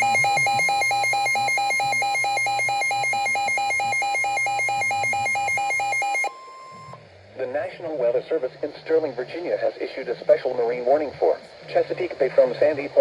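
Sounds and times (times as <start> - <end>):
two-pitch electronic alarm tone: 0.0 - 7.0.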